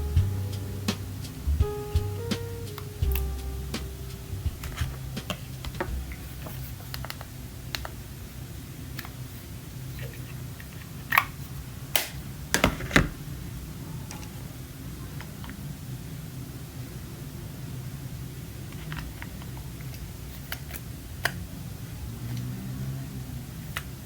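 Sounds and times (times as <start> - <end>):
low steady hum: 0.0 - 10.2.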